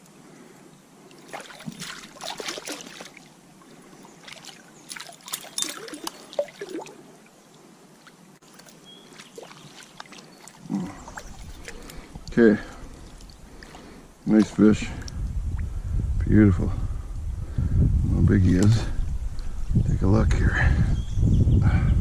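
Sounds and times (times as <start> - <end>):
water splashing in a stream: 1.0 - 14.6
running water: 1.0 - 15.1.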